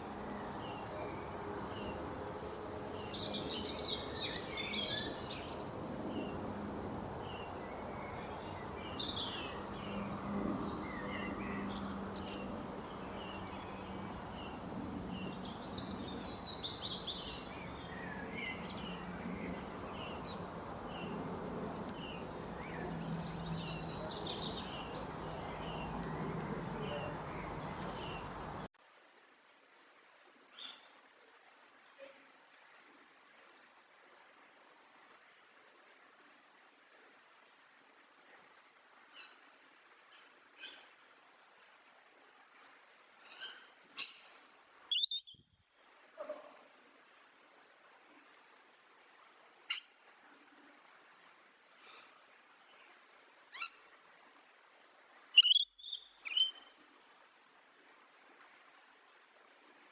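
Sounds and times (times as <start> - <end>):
background hiss: 0.0 - 59.9
birds chirping and trilling: 7.2 - 28.7, 44.9 - 45.4, 55.4 - 56.7.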